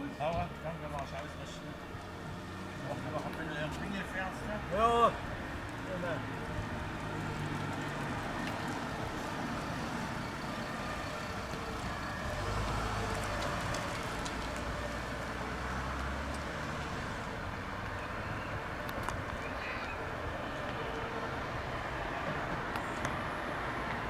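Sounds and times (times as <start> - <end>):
large vehicle engine running: 0.0 - 24.0
traffic noise: 0.0 - 24.0.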